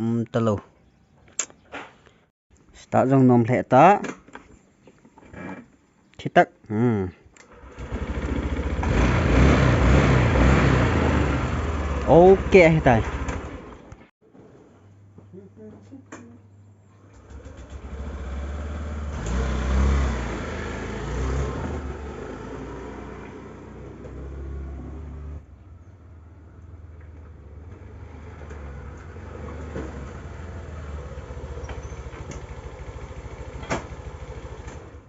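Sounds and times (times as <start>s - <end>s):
scooter engine revving and idling: 7.5s - 13.9s, 17.2s - 35.0s.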